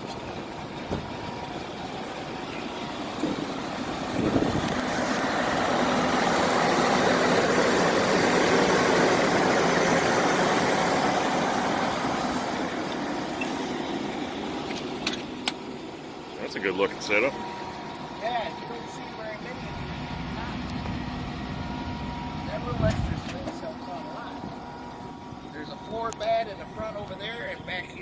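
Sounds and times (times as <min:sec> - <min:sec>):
truck engine with rod knock: 0:00.8 - 0:01.2.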